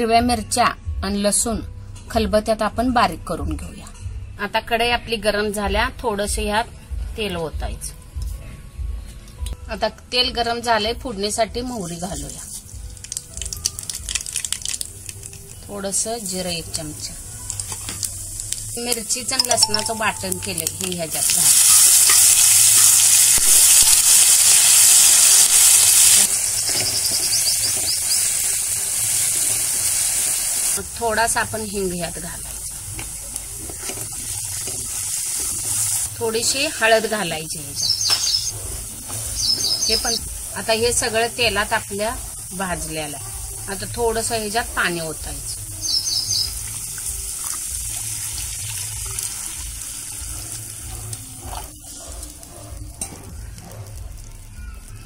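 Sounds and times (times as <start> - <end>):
paste sizzling in hot oil: 11.7 - 37.1, 37.8 - 54.2.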